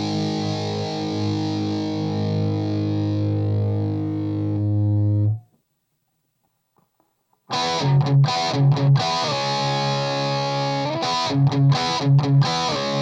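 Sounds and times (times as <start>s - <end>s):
distorted electric guitar chords: 0.0s - 5.4s, 7.5s - 13.0s.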